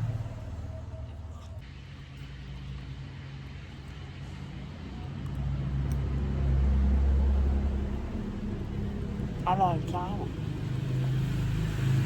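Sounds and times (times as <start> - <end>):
motorcycle engine passing: 0.0 - 1.3.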